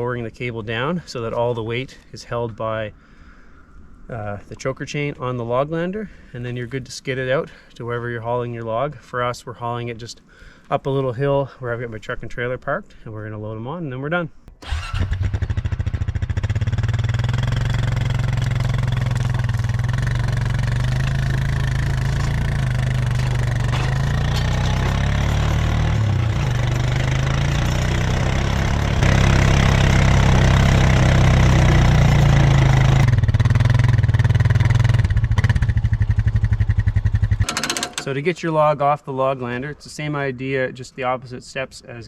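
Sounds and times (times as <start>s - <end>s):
atv engine running: 14.6s - 37.8s.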